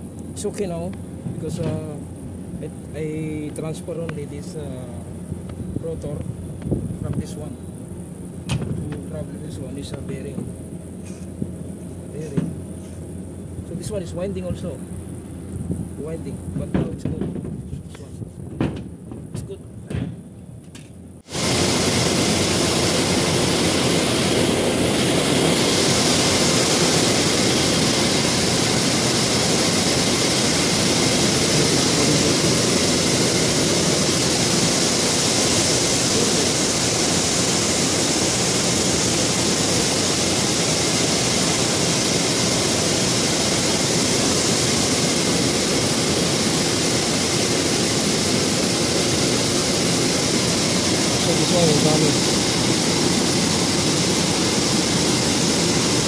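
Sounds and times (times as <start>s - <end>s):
fan motor running: 0.0s - 56.0s
rush of air: 21.2s - 56.0s.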